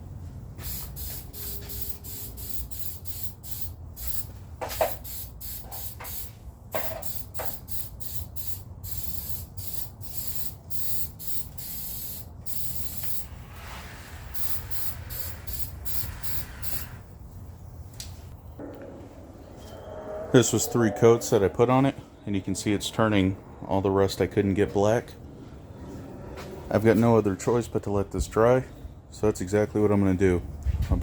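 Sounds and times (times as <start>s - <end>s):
spray can hissing: 0.6s - 17.1s.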